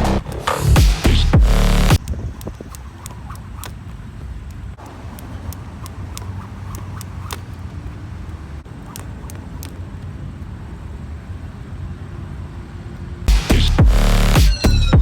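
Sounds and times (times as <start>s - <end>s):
electronic music with heavy beat: 0.0s - 2.0s, 13.3s - 15.0s
sharp clicks: 0.1s - 10.1s.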